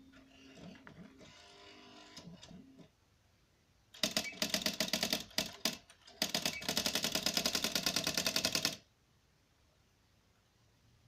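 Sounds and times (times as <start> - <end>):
electric typewriter type strikes: 4.0 - 8.8.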